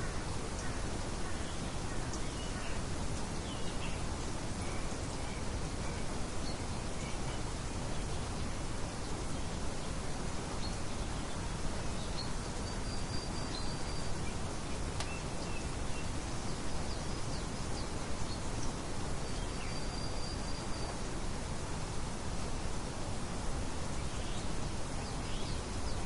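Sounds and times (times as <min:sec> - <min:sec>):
birds chirping faintly: 0:00.0 - 0:26.0.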